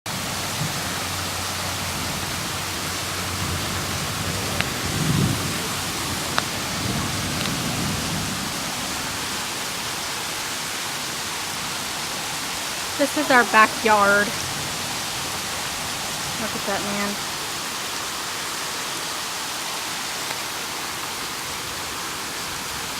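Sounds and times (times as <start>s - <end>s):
low rumble: 0.1s - 9.4s
heavy rain falling: 0.1s - 22.9s.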